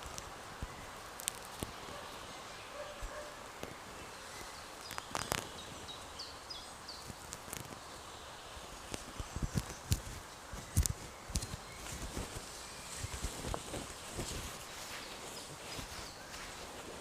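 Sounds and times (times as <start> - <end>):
sharp clicks and crackles: 0.0 - 2.0, 4.8 - 5.6, 7.0 - 7.8, 8.9 - 12.4
soft forest hiss: 0.0 - 17.0.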